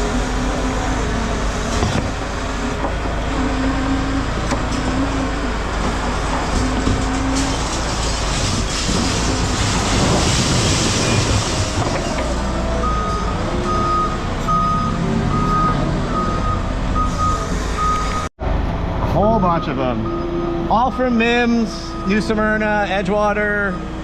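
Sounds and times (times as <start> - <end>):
reversing alarm beeping: 12.8 - 18.3, 19.5 - 22.6.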